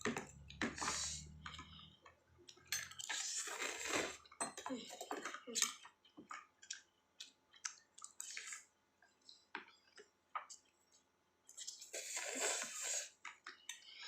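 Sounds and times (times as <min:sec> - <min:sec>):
person eating noodles: 0:00.7 - 0:04.3, 0:11.5 - 0:14.0.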